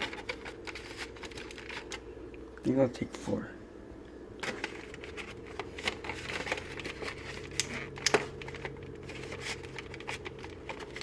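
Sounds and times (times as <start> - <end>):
packaging crackle: 0.0 - 2.0, 4.4 - 11.0
cookie packaging crinkling: 0.0 - 2.1, 4.4 - 11.0.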